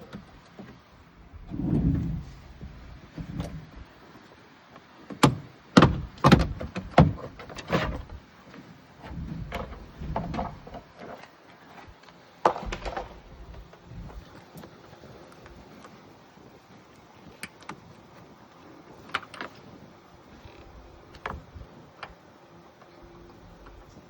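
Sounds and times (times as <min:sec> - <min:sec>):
car door parts knocking: 0:05.2 - 0:07.4.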